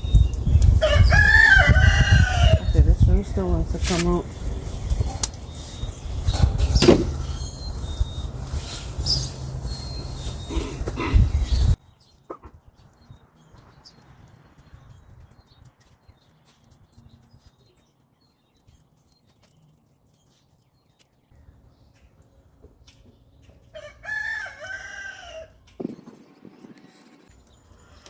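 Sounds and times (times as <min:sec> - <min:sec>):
rooster crowing: 0:00.8 - 0:02.6, 0:23.7 - 0:25.6.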